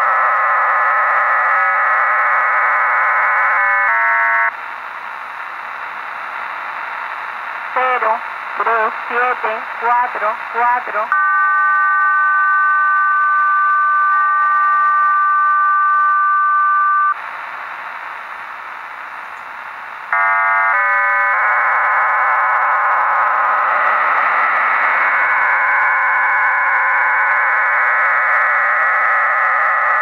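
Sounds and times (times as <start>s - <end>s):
radio static: 4.5s - 20.3s.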